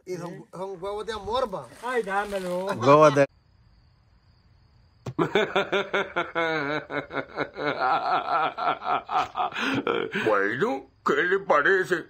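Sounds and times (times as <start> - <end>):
prolonged laughter: 5.1 - 10.2.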